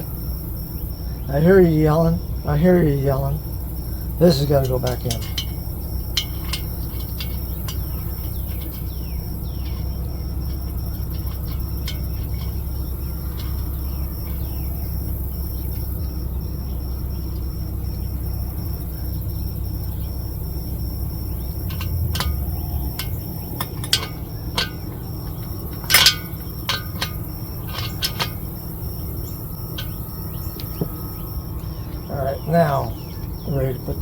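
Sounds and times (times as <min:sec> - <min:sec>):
steady low rumble: 0:00.0 - 0:34.0
clicks and clinks of small parts: 0:04.2 - 0:09.9, 0:10.5 - 0:14.6, 0:21.6 - 0:31.0.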